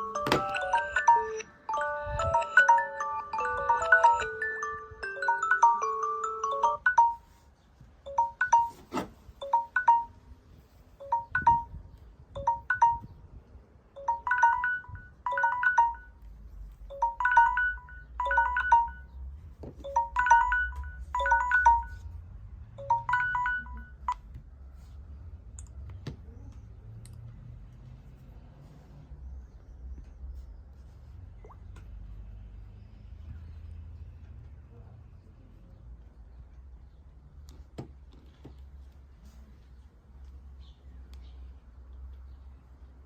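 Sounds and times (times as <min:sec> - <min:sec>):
phone alert chime notes: 0:00.0 - 0:07.4, 0:08.1 - 0:10.2, 0:11.0 - 0:13.2, 0:14.0 - 0:16.2, 0:16.9 - 0:19.2, 0:19.8 - 0:22.2, 0:22.8 - 0:24.2.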